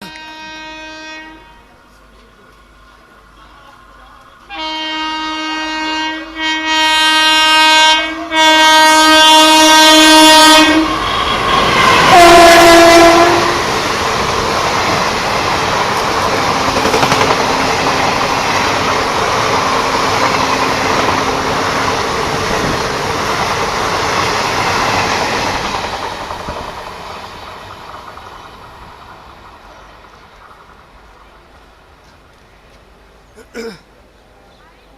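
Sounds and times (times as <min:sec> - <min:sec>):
train horn blasts: 0:00.0 - 0:01.8, 0:04.5 - 0:13.8, 0:16.4 - 0:18.9
train coaches rumbling and clattering: 0:01.3 - 0:34.9.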